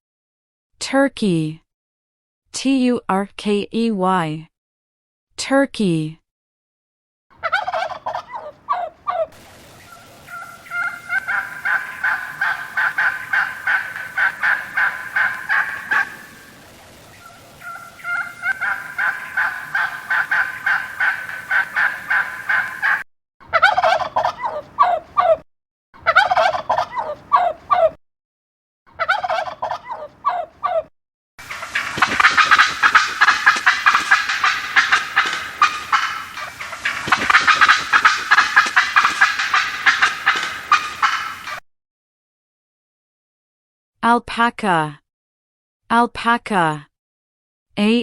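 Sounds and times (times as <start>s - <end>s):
turkey gobbling: 7.4s - 25.4s, 26.0s - 28.0s, 28.9s - 41.6s.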